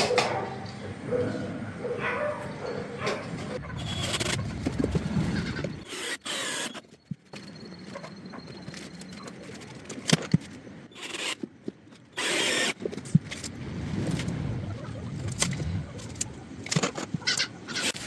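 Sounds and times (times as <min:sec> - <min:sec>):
cordless drill driving screws: 0:05.8 - 0:06.8, 0:11.0 - 0:11.4, 0:12.2 - 0:12.8.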